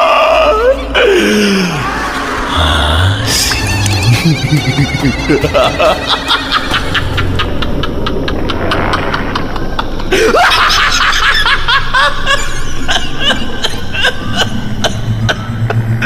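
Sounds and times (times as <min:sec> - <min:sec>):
person laughing: 0:01.5 - 0:16.0.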